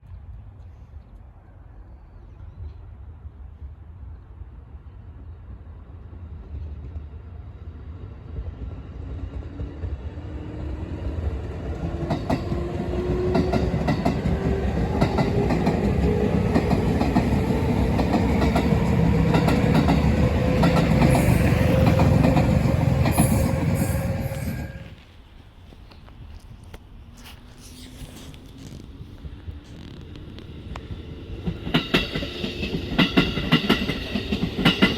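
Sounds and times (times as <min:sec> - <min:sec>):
train wheels clacking over rail joints: 0:12.0 - 0:25.0, 0:30.7 - 0:34.9
train motor whine: 0:12.4 - 0:25.1.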